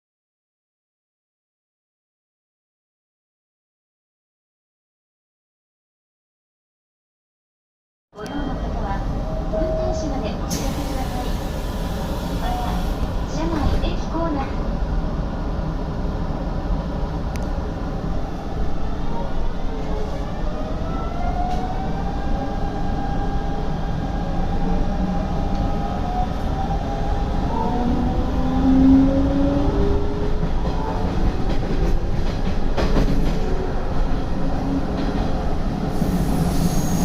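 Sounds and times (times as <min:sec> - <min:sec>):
train wheel and rail rumble: 0:08.2 - 0:37.0.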